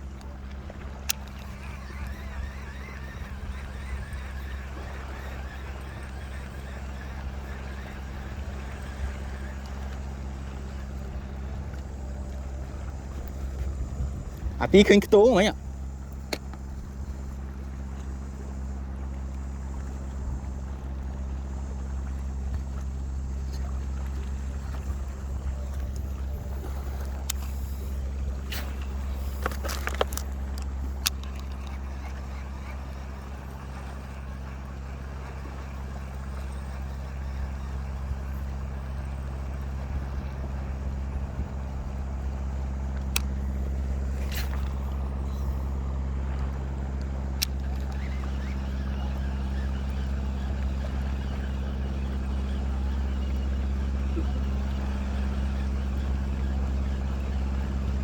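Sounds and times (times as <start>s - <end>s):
engine droning steadily: 0.0s - 58.0s
sharp clicks: 0.2s - 9.8s, 28.5s - 32.7s.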